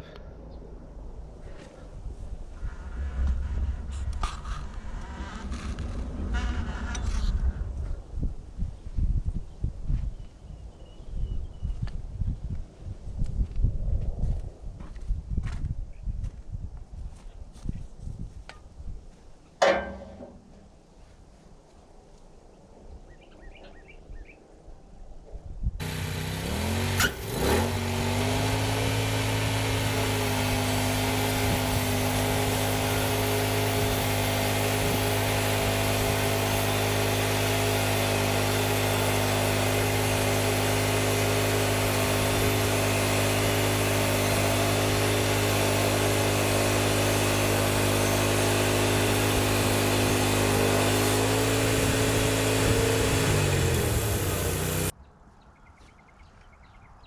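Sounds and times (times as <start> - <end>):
bandsaw mill engine revving: 25.8 - 54.9.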